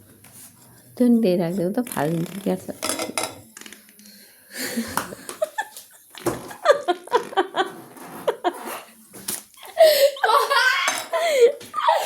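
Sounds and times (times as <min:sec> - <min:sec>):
person laughing: 0:06.6 - 0:08.8.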